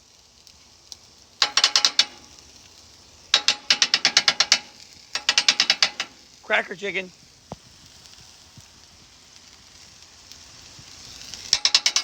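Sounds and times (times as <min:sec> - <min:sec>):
metal spatulas clacking on griddle: 0:01.4 - 0:02.4, 0:03.3 - 0:06.3, 0:11.3 - 0:12.0.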